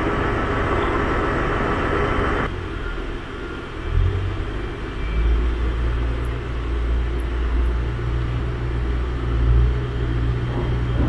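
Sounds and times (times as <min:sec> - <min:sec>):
train rumbling: 0:05.3 - 0:11.0.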